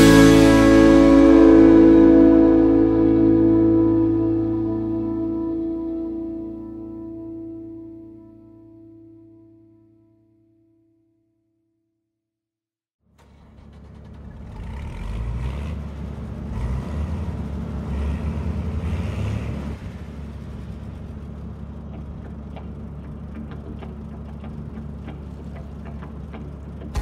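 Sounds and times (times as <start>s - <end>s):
diesel engine humming: 0.0s - 9.5s, 13.2s - 27.0s.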